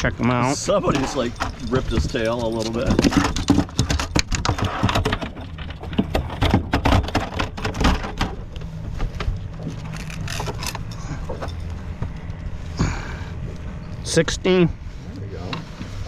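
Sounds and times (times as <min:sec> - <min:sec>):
gear knocking and rattling on boat: 0:00.0 - 0:12.6
outboard motor idling: 0:00.0 - 0:16.0.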